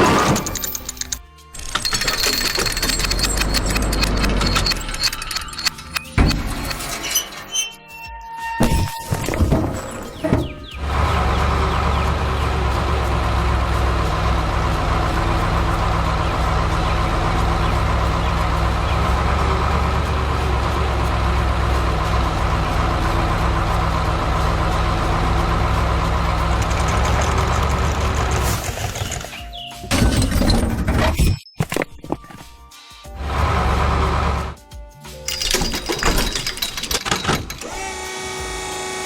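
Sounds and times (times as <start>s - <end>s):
heavy vehicle engine idling: 10.2s - 28.4s, 33.2s - 34.6s.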